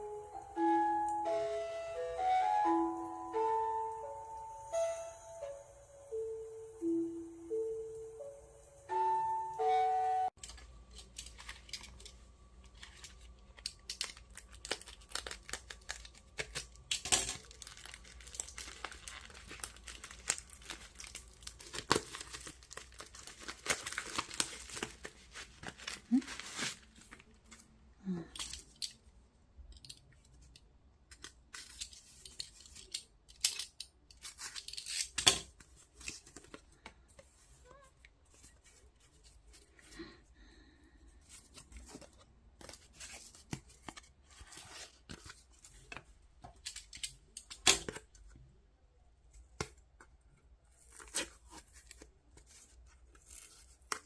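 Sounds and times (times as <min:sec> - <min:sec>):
packaging rustling and crinkling: 0:10.4 - 0:27.8, 0:34.2 - 0:37.6, 0:41.2 - 0:48.4
packaging ripping: 0:12.7 - 0:27.6, 0:50.8 - 0:54.0.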